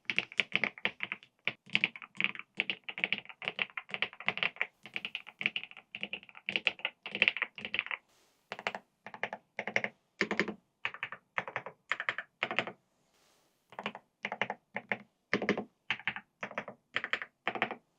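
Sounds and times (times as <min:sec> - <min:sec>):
mechanical keyboard typing: 0:00.0 - 0:08.0, 0:08.6 - 0:12.7, 0:13.8 - 0:17.8.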